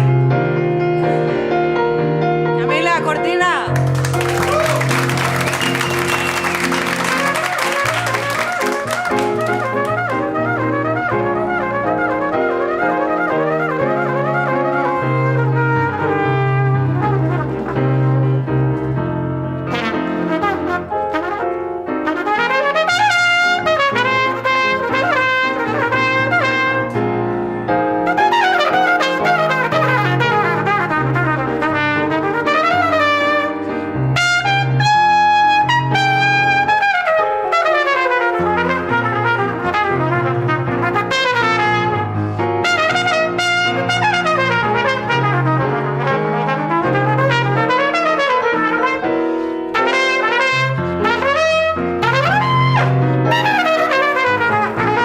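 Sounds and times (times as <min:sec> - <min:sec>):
brass section playing salsa: 0:04.0 - 0:18.4, 0:19.7 - 0:27.0, 0:28.0 - 0:55.0.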